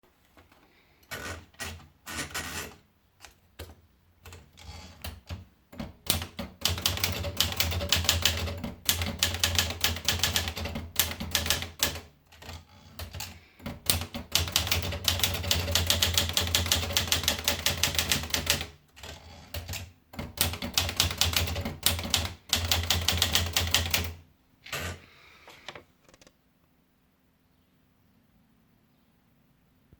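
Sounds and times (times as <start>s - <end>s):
manual typewriter key strikes: 4.3s - 24.2s.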